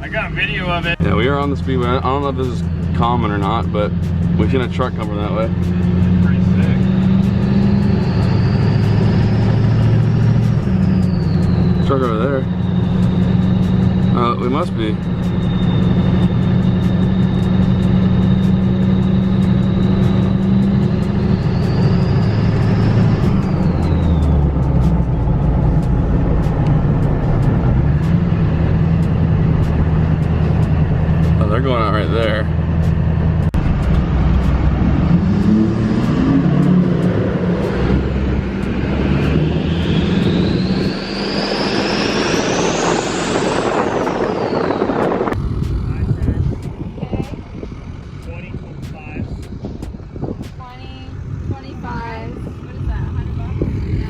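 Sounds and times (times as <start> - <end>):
diesel pickup engine: 0.0 - 54.0
high whine: 0.0 - 54.0
turbocharger whistle: 6.3 - 29.6, 34.4 - 46.6.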